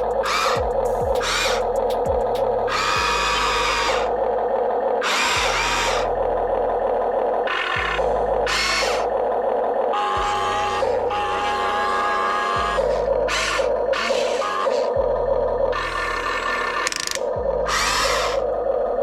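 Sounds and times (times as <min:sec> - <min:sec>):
toy excavator motors whirring: 0:00.0 - 0:02.0, 0:05.0 - 0:06.1, 0:07.4 - 0:15.0, 0:15.8 - 0:18.5
steady hum: 0:00.0 - 0:14.0.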